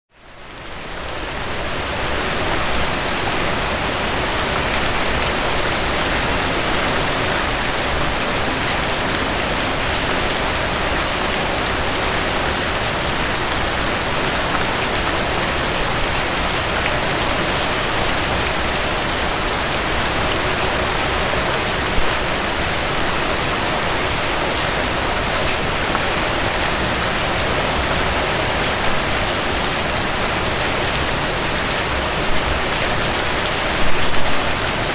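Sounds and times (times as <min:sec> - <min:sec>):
heavy rain falling: 0:00.2 - 0:34.9.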